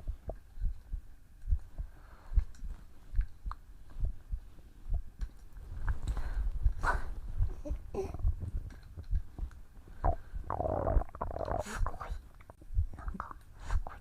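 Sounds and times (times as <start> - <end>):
heartbeat thumps: 0.0 - 14.0.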